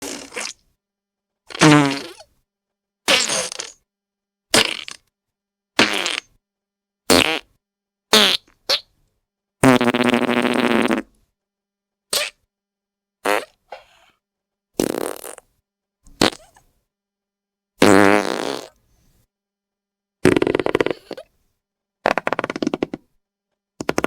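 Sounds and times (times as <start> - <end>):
fart sound effects: 0.0 - 0.6, 1.5 - 2.2, 3.1 - 3.8, 7.1 - 7.5, 9.6 - 11.1, 14.8 - 15.4, 16.2 - 16.5, 17.8 - 18.8, 20.2 - 21.3, 22.0 - 23.0.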